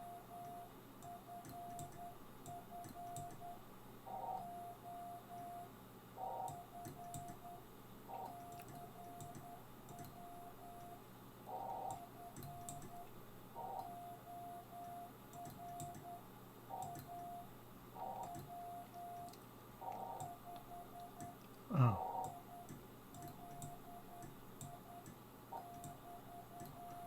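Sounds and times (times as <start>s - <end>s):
morse code tone: 25.6s - 27.0s.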